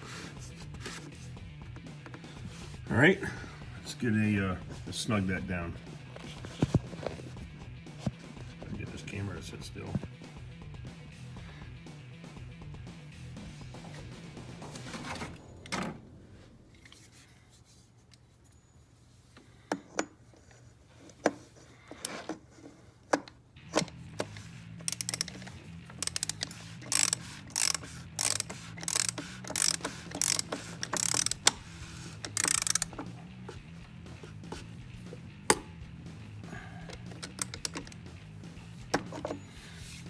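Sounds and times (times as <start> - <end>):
ratchet wrench clicking: 23.7 - 33.2, 36.9 - 38.1.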